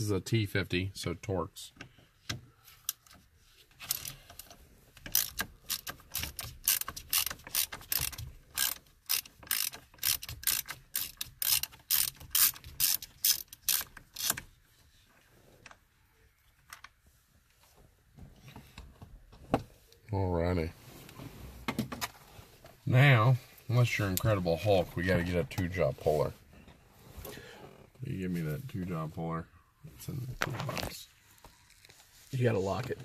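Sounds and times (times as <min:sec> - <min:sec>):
hand ratchet clicking: 0:03.8 - 0:14.4.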